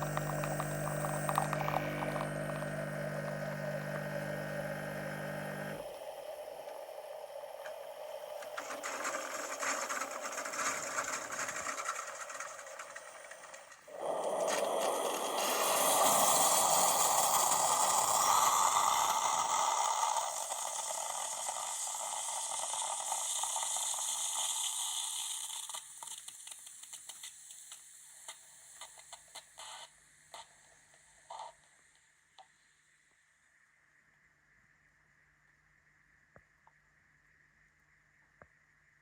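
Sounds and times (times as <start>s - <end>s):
coffee machine hissing sputter: 0.0s - 30.5s.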